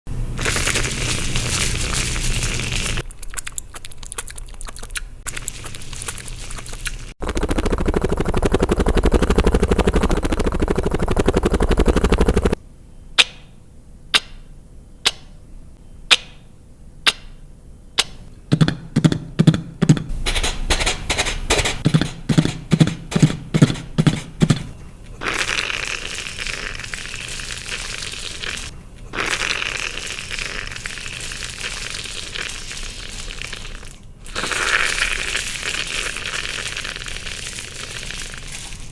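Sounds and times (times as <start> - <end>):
beatboxer making sound effects: 18.5 - 32.0.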